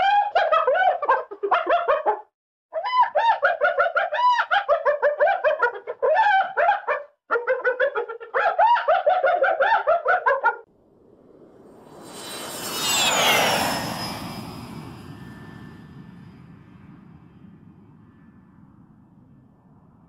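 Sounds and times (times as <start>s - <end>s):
faint rising rush: 10.7s - 18.8s.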